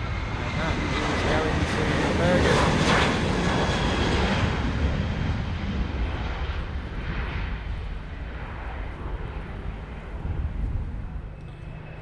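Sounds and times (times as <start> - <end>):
jet engines roaring: 0.0 - 12.0.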